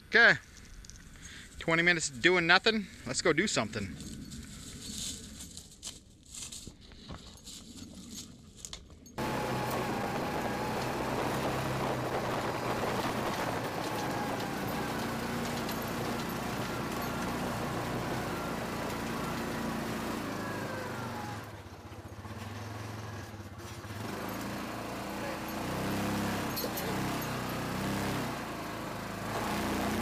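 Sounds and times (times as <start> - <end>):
utility vehicle engine running: 9.2 - 30.0.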